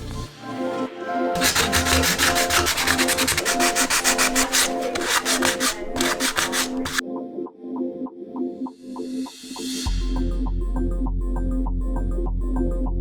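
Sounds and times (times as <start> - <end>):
background music: 0.0 - 13.0
hand sanding strokes: 1.4 - 7.0.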